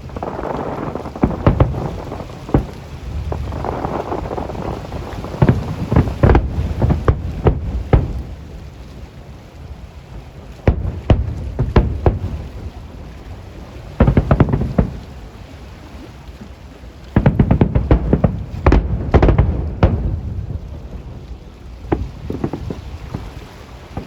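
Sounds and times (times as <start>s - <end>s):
fireworks shells bursting: 14.0s - 15.0s.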